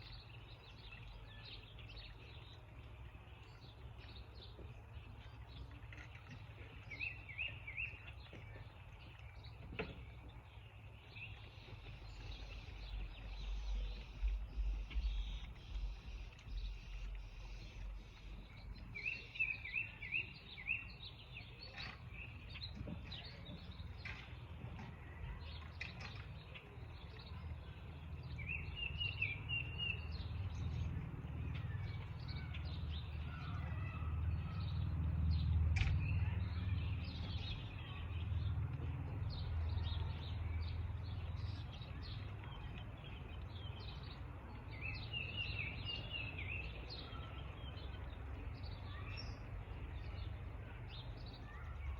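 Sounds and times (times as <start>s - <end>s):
songbirds chirping and calling: 0.0s - 51.9s
low rumble: 11.0s - 21.1s.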